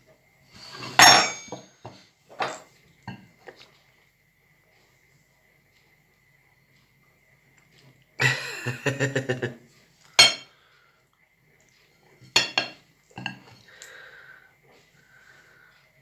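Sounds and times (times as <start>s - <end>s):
dishes and cutlery clattering: 0.6s - 3.2s, 10.2s - 10.5s, 12.3s - 13.6s.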